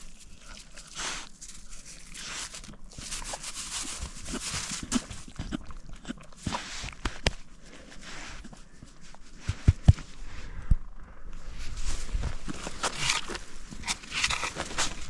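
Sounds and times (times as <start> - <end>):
rustling and brushing: 0.0 - 5.3, 6.4 - 10.3, 11.4 - 15.0
footsteps crunching on ground: 11.4 - 15.0.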